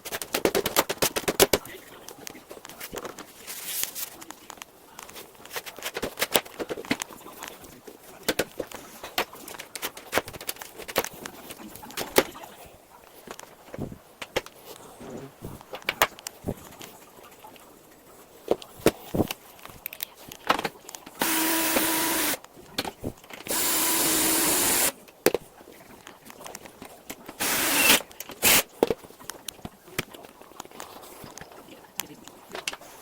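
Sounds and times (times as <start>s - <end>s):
power drill whining: 21.2s - 22.4s, 23.5s - 25.0s, 27.4s - 28.6s.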